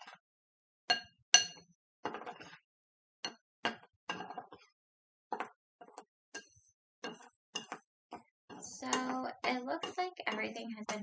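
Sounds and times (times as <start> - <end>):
utensil clinking against bowl: 0.9 - 1.6, 8.5 - 11.0.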